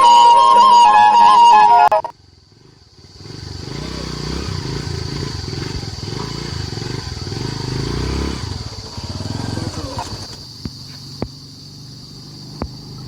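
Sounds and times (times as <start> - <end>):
short flute tune: 0.0 - 2.1
motorcycle engine rumbling: 0.0 - 13.0.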